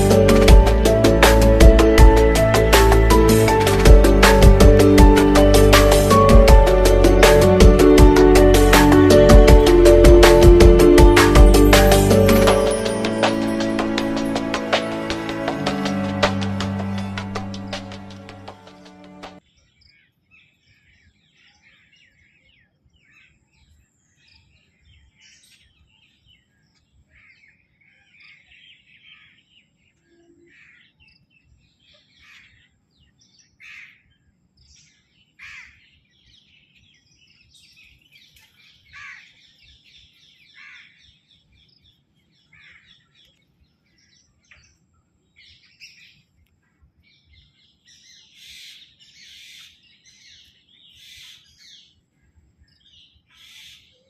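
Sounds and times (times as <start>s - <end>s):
wild birds chirping: 15.9s - 54.0s.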